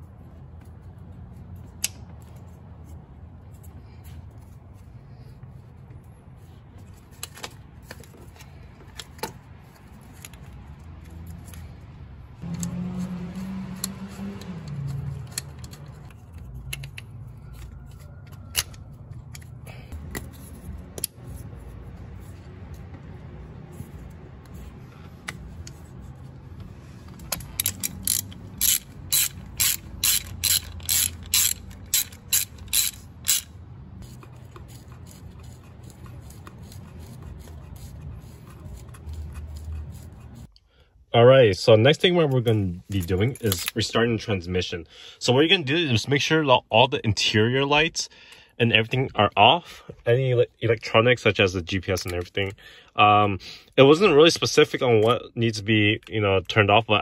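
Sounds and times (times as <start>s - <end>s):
ratchet wrench clicking: 12.4s - 17.7s, 27.3s - 37.2s.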